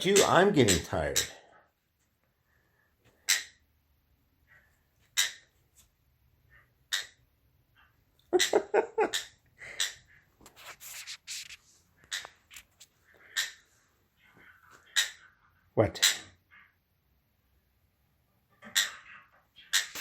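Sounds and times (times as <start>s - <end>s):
rustling: 10.4s - 13.2s
parakeet chattering calls: 12.0s - 12.4s, 13.2s - 13.7s, 14.8s - 15.4s, 18.6s - 20.0s
parakeet chirping: 13.2s - 16.8s, 18.6s - 20.0s.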